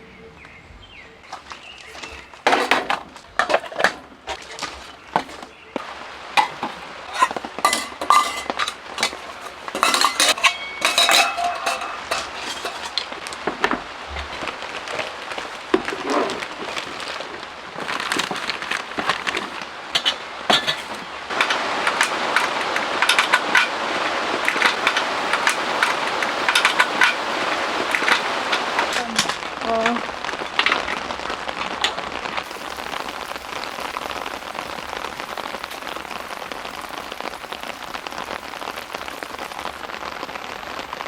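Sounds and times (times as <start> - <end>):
heavy rain on tent: 1.2 - 41.0
dishes clinking: 1.3 - 17.0, 17.8 - 29.4.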